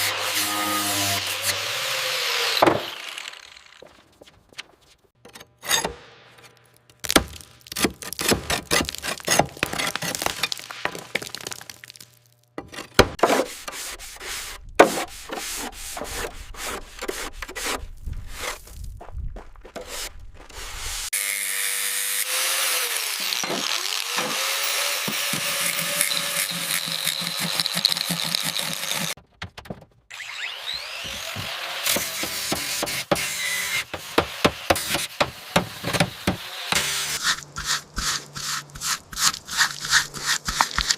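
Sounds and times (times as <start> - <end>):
hand tools scraping and knocking: 23.2 - 29.9, 31.0 - 40.9.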